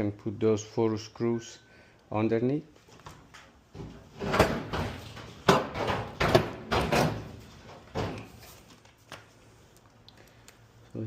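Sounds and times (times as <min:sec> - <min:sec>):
knocks and thumps on dryer: 0:03.8 - 0:08.2.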